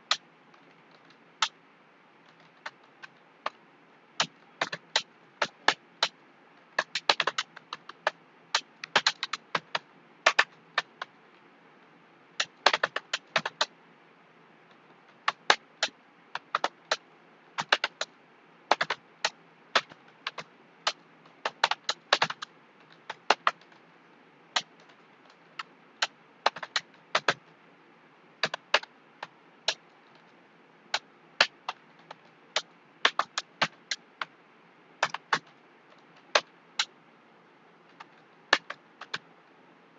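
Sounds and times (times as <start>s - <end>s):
computer keyboard typing: 6.8s - 11.1s, 12.4s - 13.7s, 15.2s - 17.0s, 17.6s - 18.1s, 18.7s - 19.0s, 19.8s - 23.7s, 26.0s - 27.4s.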